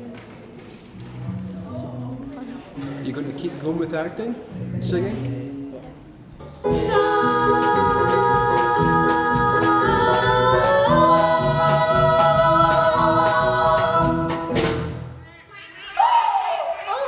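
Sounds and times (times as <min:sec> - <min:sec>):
musical accompaniment: 0:04.5 - 0:15.2
group singing held notes: 0:05.3 - 0:15.0
steady ticking beat: 0:06.7 - 0:15.1.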